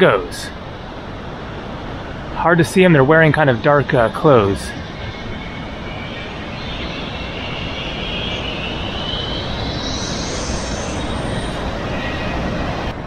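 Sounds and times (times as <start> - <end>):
steady rushing noise: 0.0 - 13.0
zip-line trolley whirring: 3.6 - 13.0.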